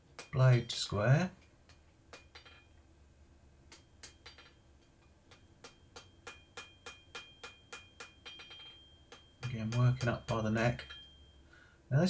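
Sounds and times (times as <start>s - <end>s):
hammer striking steel on anvil: 2.1s - 2.8s, 3.7s - 11.5s.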